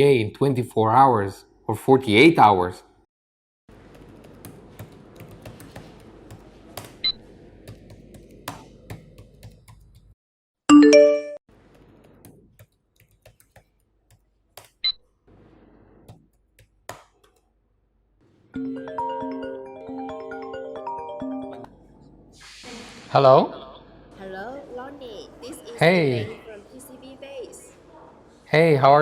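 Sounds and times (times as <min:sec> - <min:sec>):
keyboard and mouse clicks: 0:03.9 - 0:10.2, 0:11.7 - 0:14.9, 0:16.0 - 0:17.5
phone ringtone melody: 0:10.7 - 0:11.4, 0:18.6 - 0:21.7.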